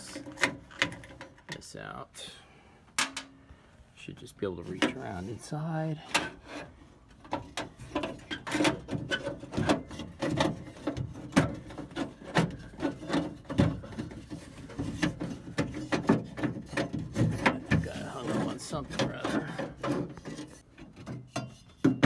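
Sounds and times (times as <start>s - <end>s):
metal clicks knocks and scraping: 0.0s - 1.8s, 2.9s - 3.4s, 4.7s - 5.4s, 6.0s - 22.0s.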